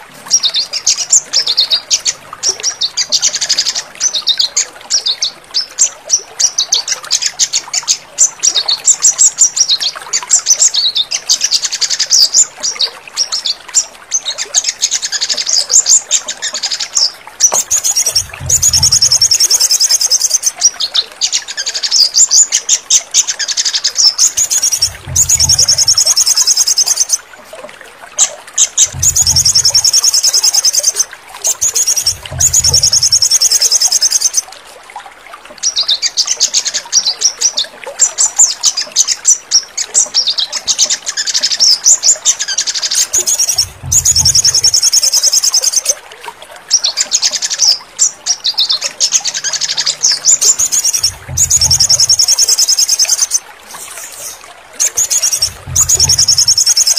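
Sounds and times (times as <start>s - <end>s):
sunbird trilling song: 14.6s - 22.6s, 23.4s - 27.2s, 28.6s - 34.4s, 40.0s - 45.9s, 48.4s - 56.9s
low thuds: 17.6s - 19.3s, 24.9s - 25.9s, 28.8s - 29.8s, 32.1s - 33.0s, 43.6s - 44.5s, 55.5s - 56.4s.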